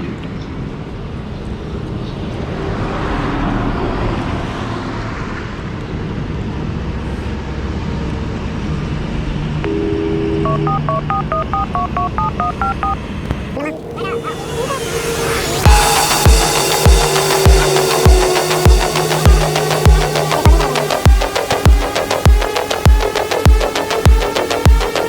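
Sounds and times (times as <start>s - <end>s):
road traffic rumble: 0.0s - 25.0s
short electronic beeps: 9.7s - 13.6s
horn: 15.1s - 25.0s.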